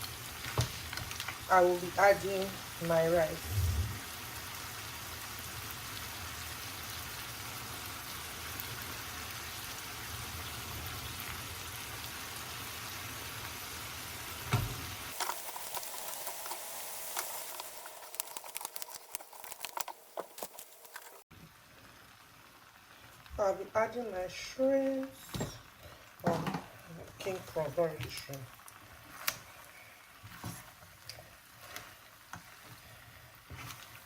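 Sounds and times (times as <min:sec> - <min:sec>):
seafood sizzling in a wok: 0:00.0 - 0:03.4, 0:04.0 - 0:34.0
sharp crackles and clicks: 0:15.1 - 0:21.3.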